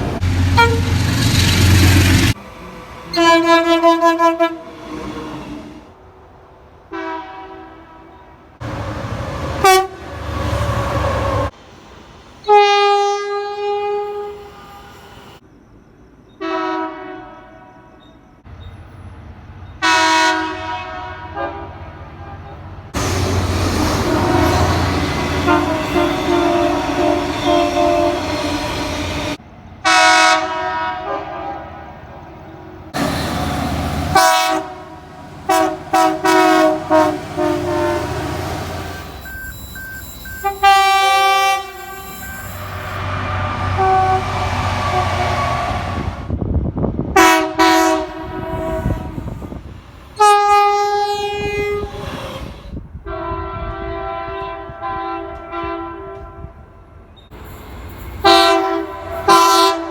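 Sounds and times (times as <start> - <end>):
low rumble of moving train: 0.0 - 59.9
locomotive air horn blasts: 0.4 - 1.1, 3.1 - 4.8, 6.9 - 8.4, 9.6 - 10.1, 12.4 - 15.3, 16.4 - 18.0, 19.8 - 22.6, 23.3 - 31.9, 33.0 - 46.4, 47.2 - 49.6, 50.2 - 56.9, 58.2 - 59.9.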